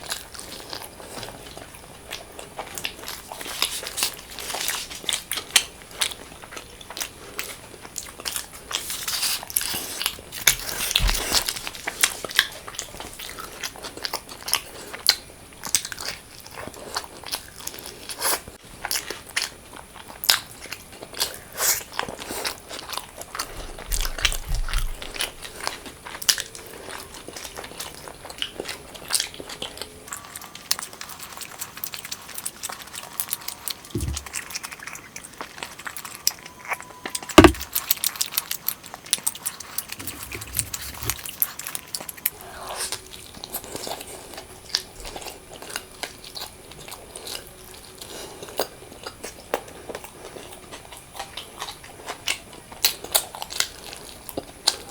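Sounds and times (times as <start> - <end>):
person chewing crunchy food: 0.0 - 54.9
low thump: 37.4 - 37.7.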